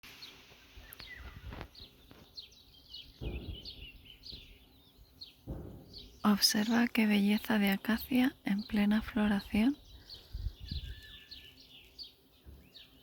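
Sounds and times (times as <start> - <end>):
small birds chirping: 0.0 - 13.0
wind buffeting microphone: 1.0 - 1.8, 3.1 - 6.3, 8.7 - 11.3.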